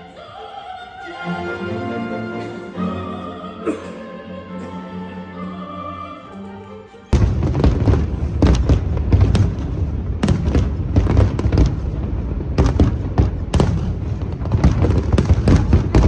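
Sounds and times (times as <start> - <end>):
continuous low rumble: 7.2 - 16.0
fireworks bangs and crackles: 7.2 - 16.0.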